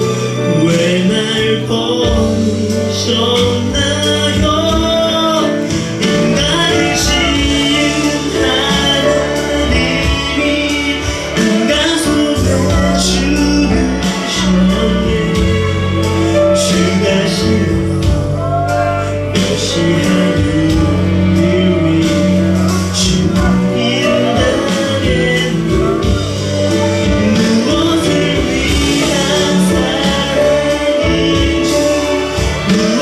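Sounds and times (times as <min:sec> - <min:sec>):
instrumental accompaniment: 0:00.0 - 0:33.0
person singing: 0:00.0 - 0:33.0.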